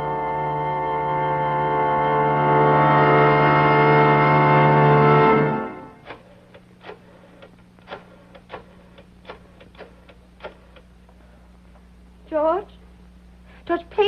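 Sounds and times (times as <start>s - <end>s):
music: 0.0s - 6.2s
faint steady hum: 0.0s - 14.0s
sharp clicks and taps: 6.0s - 10.9s.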